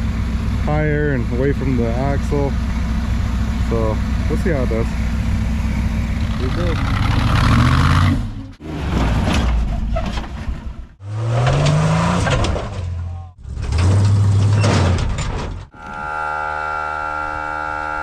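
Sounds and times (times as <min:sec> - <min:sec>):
buggy engine revving: 0:00.0 - 0:18.0
electronic hum with high whine: 0:15.8 - 0:18.0.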